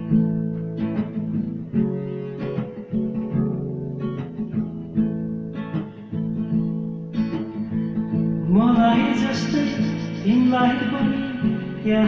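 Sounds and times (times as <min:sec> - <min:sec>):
acoustic guitar strumming: 0:00.0 - 0:12.0
person singing: 0:08.4 - 0:12.0.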